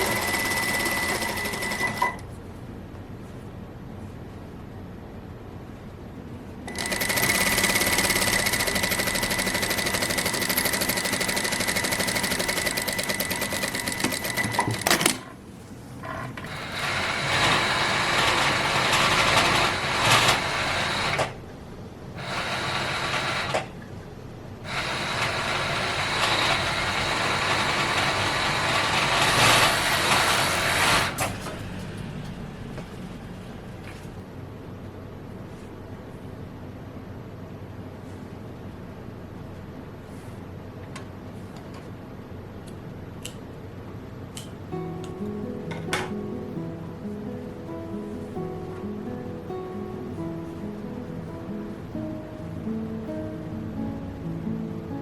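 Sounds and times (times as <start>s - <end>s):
sewing machine stitching: 0.0s - 2.2s, 6.7s - 15.3s, 16.4s - 21.3s, 24.7s - 31.6s.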